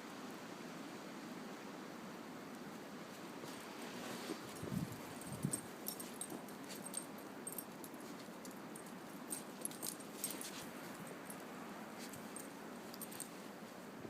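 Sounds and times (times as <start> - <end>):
dog collar tags jingling: 4.5 - 13.4.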